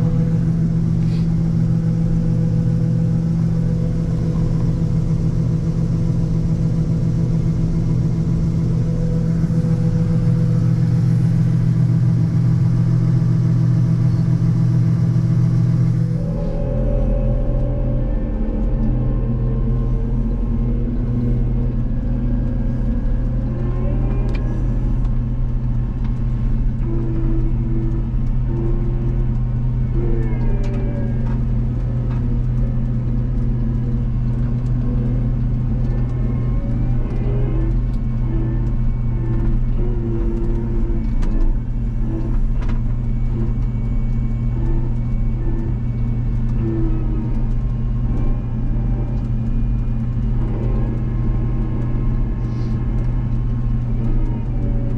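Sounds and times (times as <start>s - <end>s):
diesel engine droning: 0.0s - 54.9s.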